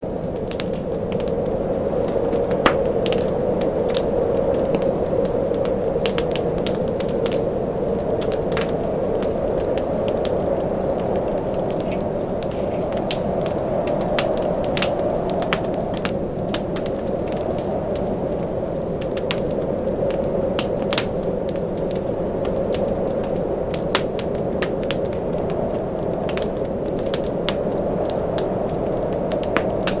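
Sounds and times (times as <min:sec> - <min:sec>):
low rushing of fire: 0:00.0 - 0:30.0
wood fire crackling: 0:00.0 - 0:30.0
sharp pops of fire: 0:02.4 - 0:03.3.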